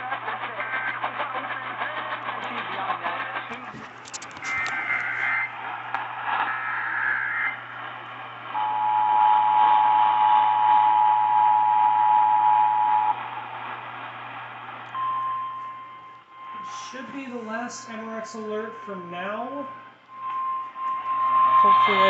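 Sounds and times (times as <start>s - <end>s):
screechy data bursts: 0.0s - 13.2s, 15.0s - 22.0s
radio static and hum: 0.0s - 22.0s
two-tone alert signal: 15.0s - 22.0s.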